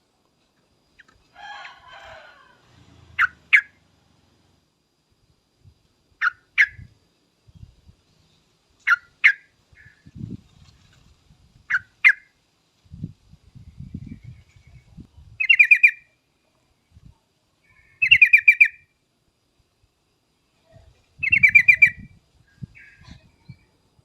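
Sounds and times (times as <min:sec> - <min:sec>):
bird chattering trill: 0:03.2 - 0:03.8, 0:06.2 - 0:06.9, 0:08.8 - 0:10.1, 0:15.4 - 0:16.2, 0:17.7 - 0:18.9, 0:21.2 - 0:22.1.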